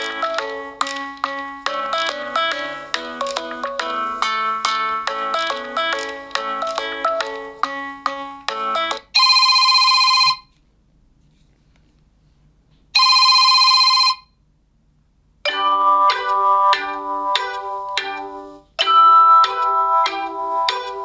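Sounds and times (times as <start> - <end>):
ringtone melody of short notes: 0.0 - 10.5
telephone ring: 8.8 - 10.5, 13.0 - 14.4.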